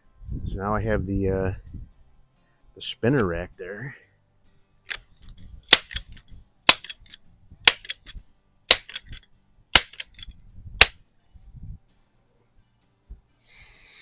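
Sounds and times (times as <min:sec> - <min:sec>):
air rifle pump clacks: 0:05.7 - 0:11.0.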